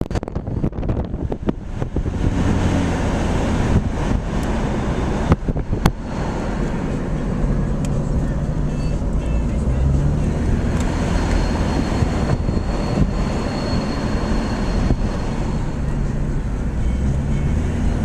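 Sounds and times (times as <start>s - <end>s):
wind buffeting microphone: 0.0s - 6.9s, 11.7s - 13.5s.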